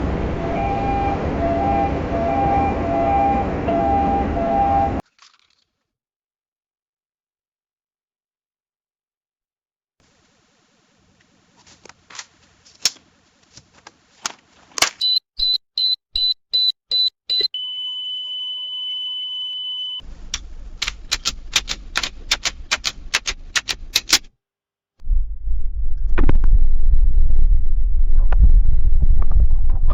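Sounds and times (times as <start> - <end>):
long steady beep: 0.4 - 5.0, 15.0 - 20.0
rapid mechanical clicking: 20.2 - 24.3
keys clicking: 20.3 - 24.3
low rumble: 25.0 - 29.9.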